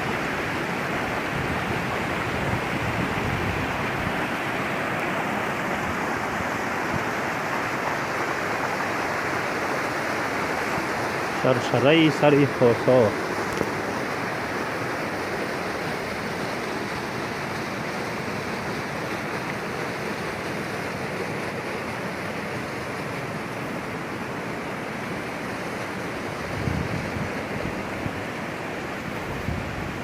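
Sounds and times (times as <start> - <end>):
waterfall roaring: 0.0 - 30.0
wind rumble on microphone: 1.4 - 4.2, 26.4 - 28.2, 29.1 - 30.0.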